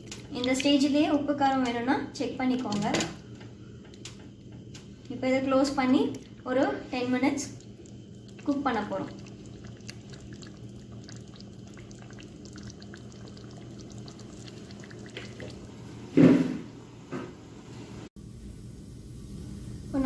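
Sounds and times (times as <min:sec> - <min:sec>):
steady low hum: 0:00.0 - 0:20.0
curry bubbling and popping: 0:06.0 - 0:16.2.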